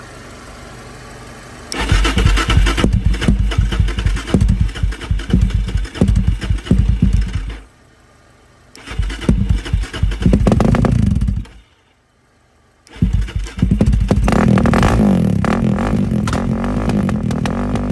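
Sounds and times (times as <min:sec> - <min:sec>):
motorcycle engine cranking: 0:01.7 - 0:07.7, 0:08.8 - 0:11.7, 0:12.9 - 0:17.9.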